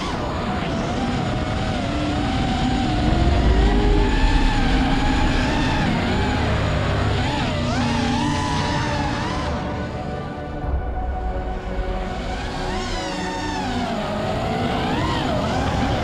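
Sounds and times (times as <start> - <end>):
quadcopter motors whining: 0.0 - 10.6, 11.6 - 16.0
low rumble: 2.6 - 6.6, 10.4 - 14.6.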